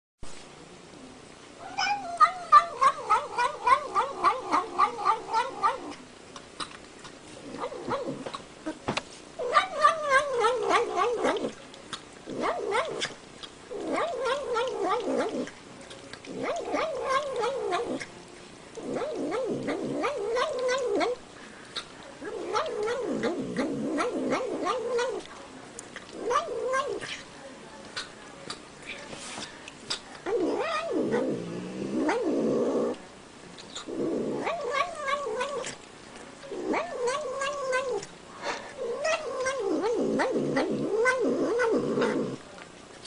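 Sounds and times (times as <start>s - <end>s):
cat yowling: 1.6s - 5.9s, 9.4s - 11.5s, 16.4s - 17.9s, 26.2s - 27.1s, 30.3s - 31.3s, 34.4s - 35.7s, 36.7s - 38.0s.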